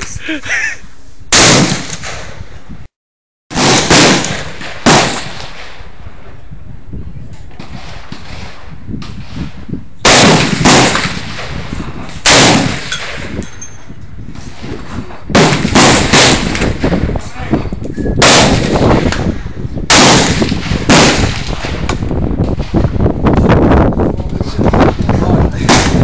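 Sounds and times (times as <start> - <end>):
rifle shots with echo: 1.3 - 2.4, 3.5 - 5.9, 10.0 - 13.4, 15.3 - 17.0, 18.2 - 21.9, 25.6 - 26.0.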